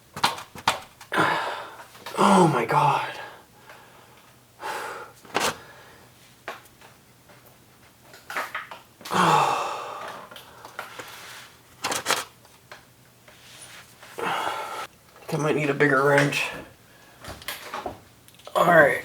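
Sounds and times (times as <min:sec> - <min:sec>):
person grunting with effort: 0:01.1 - 0:03.1, 0:09.1 - 0:10.2, 0:14.2 - 0:14.9.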